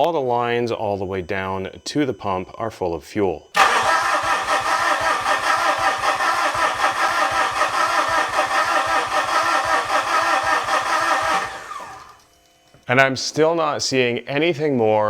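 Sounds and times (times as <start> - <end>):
diesel engine cranking on starter: 3.6 - 12.2.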